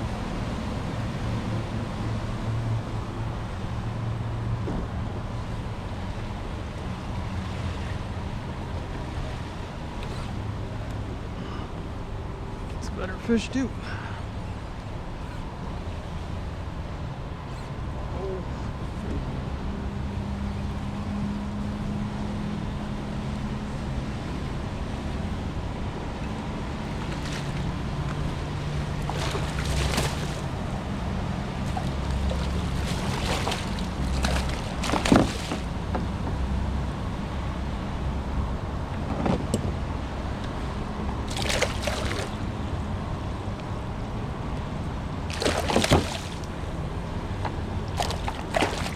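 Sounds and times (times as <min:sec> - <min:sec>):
water splashing against kayak hull: 0:26.2 - 0:36.3, 0:41.2 - 0:42.6, 0:45.2 - 0:47.0, 0:47.8 - 0:48.9.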